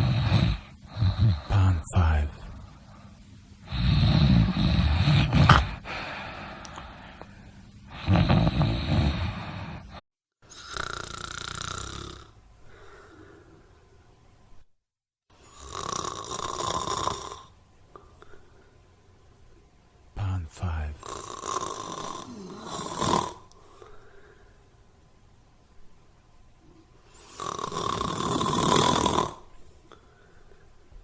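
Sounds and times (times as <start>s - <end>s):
person snoring: 0.0s - 2.6s, 3.6s - 7.2s, 7.9s - 13.6s, 15.4s - 17.6s, 20.2s - 24.0s, 27.1s - 30.1s.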